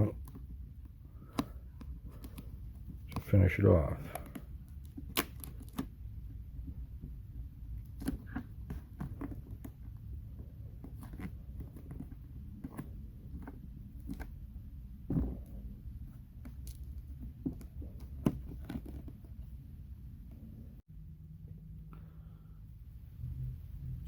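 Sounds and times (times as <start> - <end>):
low hum: 19.3 - 24.0.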